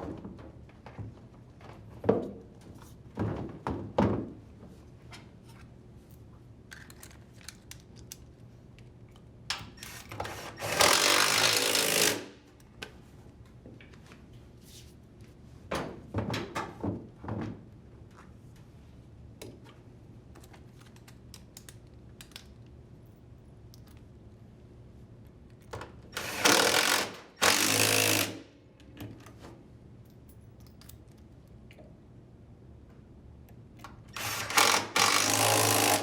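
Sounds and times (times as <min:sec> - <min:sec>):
impact driver running: 0:10.2 - 0:12.3, 0:26.2 - 0:28.4, 0:34.2 - 0:36.0.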